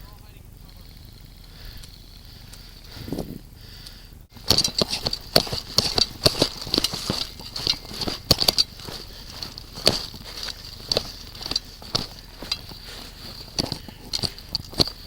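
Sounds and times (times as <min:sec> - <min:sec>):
footsteps crunching dry leaves: 0:04.3 - 0:15.0.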